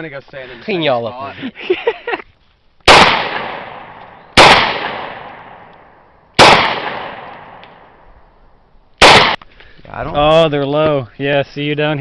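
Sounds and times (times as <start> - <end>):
handgun shots echoing: 2.9 - 7.9, 9.0 - 9.4.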